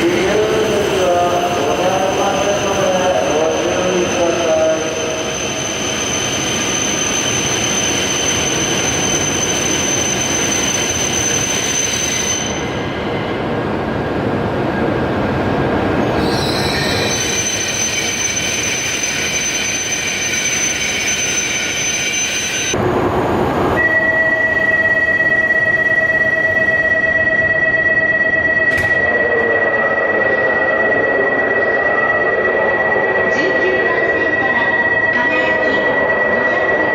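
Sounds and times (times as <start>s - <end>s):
electric train whine: 0.0s - 36.9s
steady high tone: 0.2s - 13.4s, 23.7s - 36.9s.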